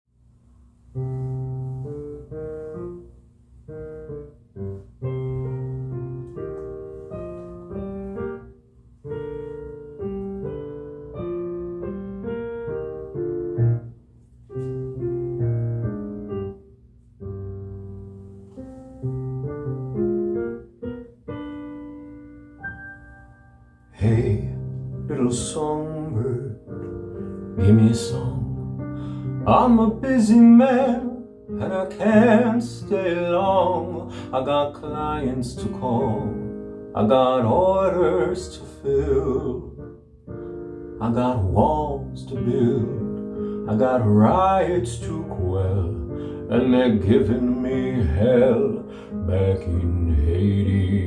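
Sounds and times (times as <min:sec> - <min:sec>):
piano chords: 0:00.9 - 0:51.0.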